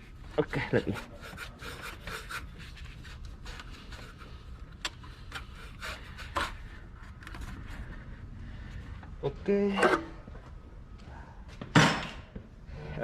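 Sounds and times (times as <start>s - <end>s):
hands and tools scraping: 0.0s - 8.2s, 9.7s - 10.2s.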